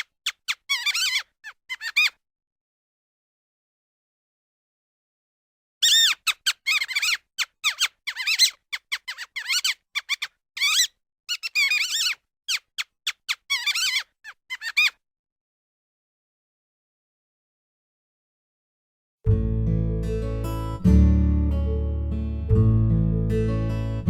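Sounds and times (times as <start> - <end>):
mouse squeaking: 0.0 - 2.2, 5.8 - 15.0.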